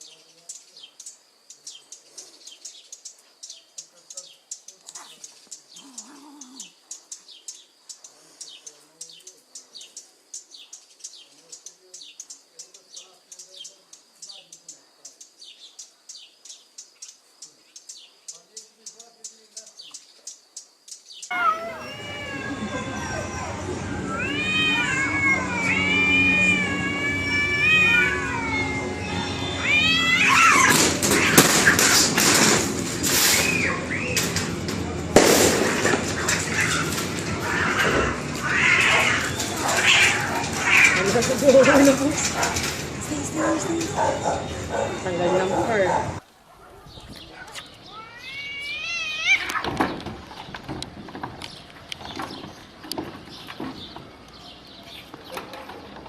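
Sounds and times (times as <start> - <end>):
small birds chirping: 0.0 - 32.1, 33.2 - 34.6, 35.8 - 56.0
cats hissing and scuffling: 4.8 - 6.8, 21.3 - 54.0
low wavering cry: 21.3 - 30.1
cats yowling: 21.3 - 32.1, 35.7 - 49.7.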